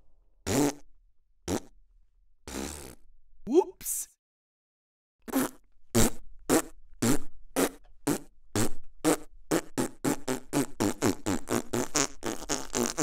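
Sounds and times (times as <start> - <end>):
comic fart sound effects: 0.4 - 0.9, 1.5 - 1.7, 2.4 - 3.1, 5.3 - 13.0.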